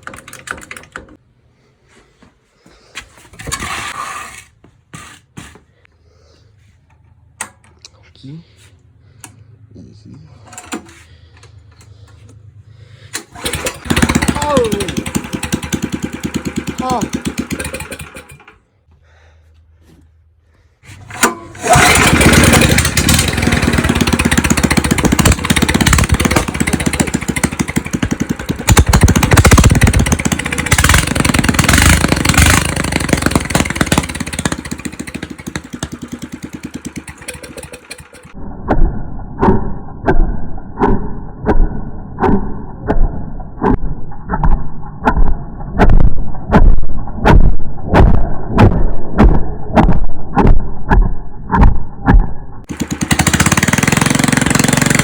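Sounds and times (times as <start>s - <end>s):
loud regular engine pulses: 10.5s - 18.8s, 21.0s - 38.4s, 39.4s - 55.0s
go-kart engine revving: 13.2s - 18.6s, 21.0s - 38.4s, 52.7s - 55.0s.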